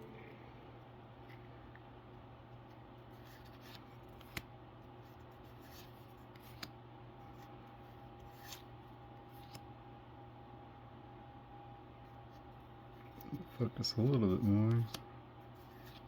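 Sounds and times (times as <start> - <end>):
cards rustling: 3.0 - 9.7, 13.0 - 16.0.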